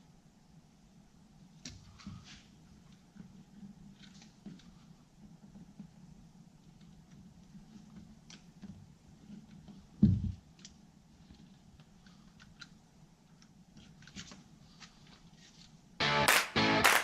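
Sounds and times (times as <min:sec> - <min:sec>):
faint clicks and knocks: 0:01.6 - 0:15.8
strummed guitar music: 0:16.0 - 0:17.0.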